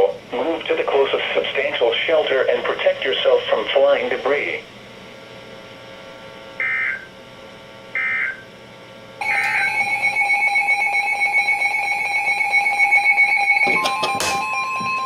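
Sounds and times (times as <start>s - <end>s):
warbling data chirps: 9.2s - 11.8s
two-pitch electronic alert tone: 9.2s - 14.6s.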